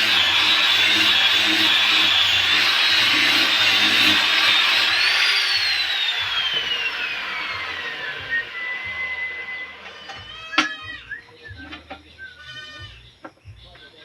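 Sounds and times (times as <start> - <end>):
power tool motor whining: 0.0 - 11.0.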